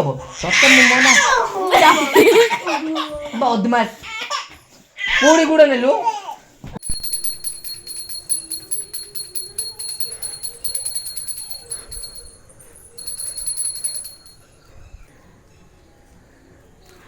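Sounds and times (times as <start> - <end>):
bright jingling music: 1.7 - 2.6, 6.8 - 14.8.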